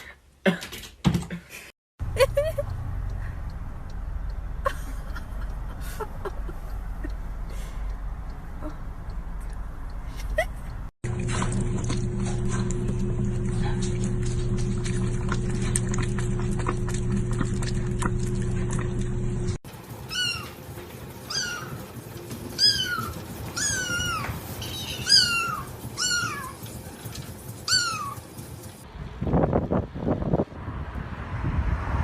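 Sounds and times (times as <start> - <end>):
low hum with faint clicks: 2.0 - 19.6
cat meowing: 20.1 - 20.6, 21.3 - 21.8, 22.6 - 26.6.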